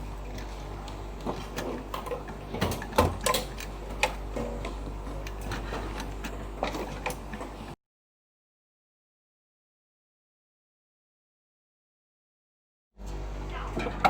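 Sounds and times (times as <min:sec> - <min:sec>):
low electrical hum: 0:00.0 - 0:07.8.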